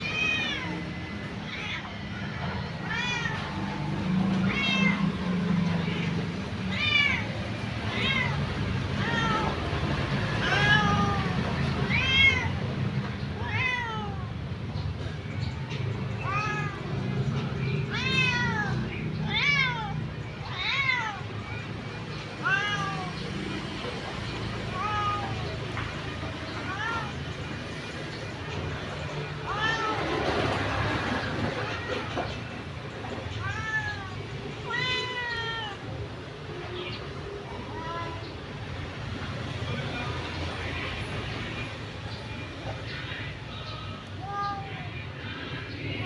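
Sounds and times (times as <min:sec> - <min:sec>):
cat meowing: 0:00.0 - 0:05.2, 0:05.8 - 0:09.7, 0:10.3 - 0:12.7, 0:13.4 - 0:14.3, 0:17.8 - 0:21.6, 0:22.2 - 0:23.3, 0:24.5 - 0:25.7, 0:29.3 - 0:30.2, 0:33.2 - 0:36.1, 0:44.1 - 0:45.0.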